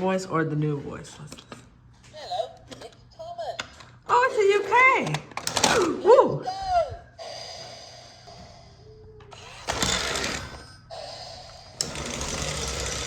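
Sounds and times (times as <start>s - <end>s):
toy train hiss: 7.2s - 8.8s, 9.4s - 13.0s.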